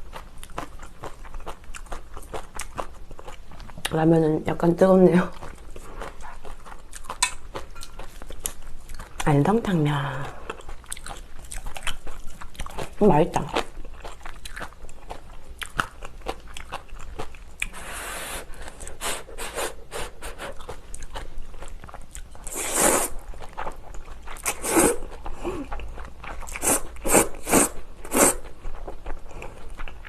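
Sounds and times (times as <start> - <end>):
wet crunchy chewing: 10.4 - 17.9
slurping noodles: 22.5 - 23.2, 24.4 - 25.1, 26.6 - 28.5.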